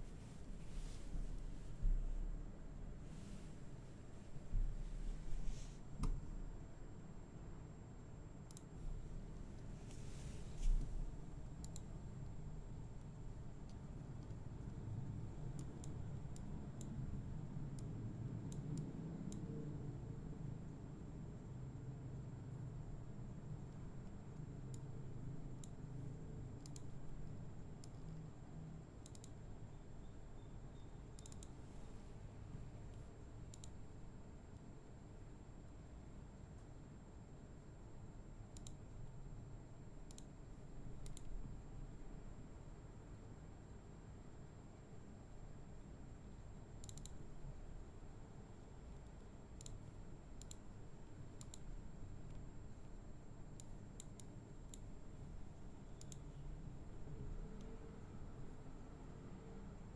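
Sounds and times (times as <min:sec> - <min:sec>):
low steady hum: 0:00.0 - 0:59.9
computer mouse clicking: 0:05.5 - 0:06.4, 0:08.5 - 0:08.8, 0:09.5 - 0:14.8, 0:15.4 - 0:17.0, 0:17.7 - 0:19.6, 0:23.7 - 0:25.9, 0:26.5 - 0:28.3, 0:29.0 - 0:29.5, 0:31.2 - 0:31.9, 0:32.9 - 0:33.9, 0:38.5 - 0:39.1, 0:40.0 - 0:41.4, 0:46.8 - 0:47.5, 0:49.0 - 0:56.4.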